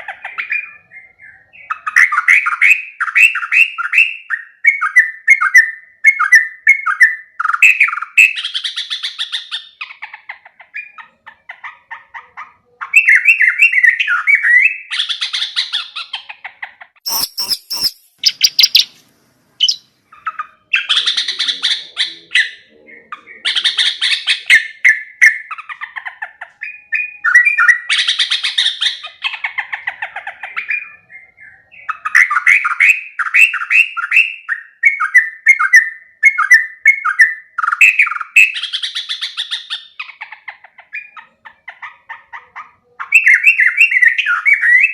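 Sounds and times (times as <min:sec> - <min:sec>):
bird singing bubbly whistles: 0:17.0 - 0:19.0.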